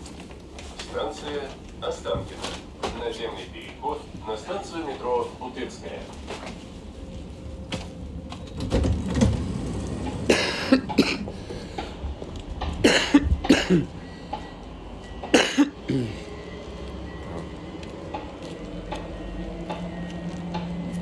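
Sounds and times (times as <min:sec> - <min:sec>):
train carriage rumble: 0:00.0 - 0:21.0
man coughing: 0:10.3 - 0:11.3, 0:12.8 - 0:14.0, 0:15.3 - 0:16.2.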